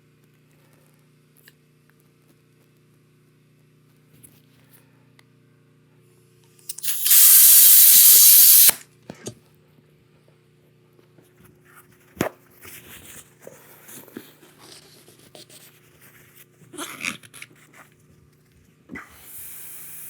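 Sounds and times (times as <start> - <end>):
sharp click: 6.7 - 8.8.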